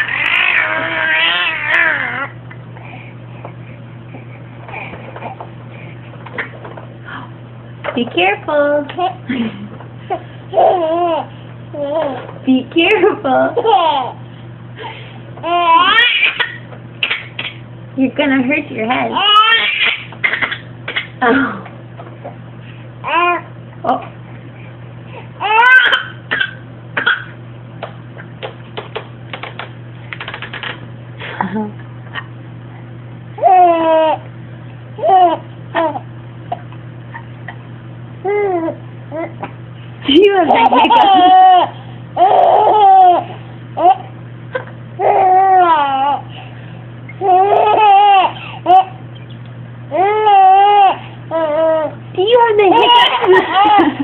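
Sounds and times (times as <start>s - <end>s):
baby wailing: 0.0s - 2.4s, 10.5s - 12.2s, 15.4s - 17.6s, 19.2s - 21.1s, 23.0s - 23.5s, 25.4s - 27.3s, 33.4s - 34.2s, 40.9s - 44.1s, 45.0s - 46.3s, 47.2s - 49.0s, 49.9s - 52.0s.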